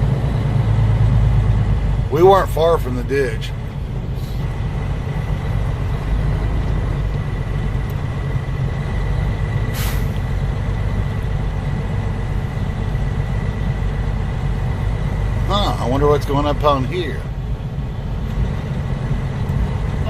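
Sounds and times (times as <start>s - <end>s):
truck engine and road rumble: 0.0s - 20.0s
short hiss: 9.7s - 10.2s.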